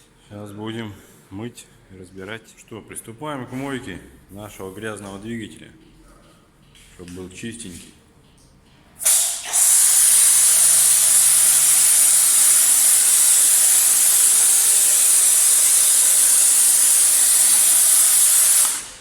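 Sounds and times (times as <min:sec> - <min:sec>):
pressure washer jet spraying: 0:09.0 - 0:19.0.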